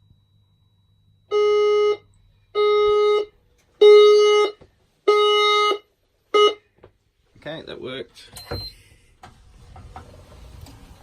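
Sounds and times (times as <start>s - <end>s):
fire alarm pulsed tones: 0.0s - 6.7s.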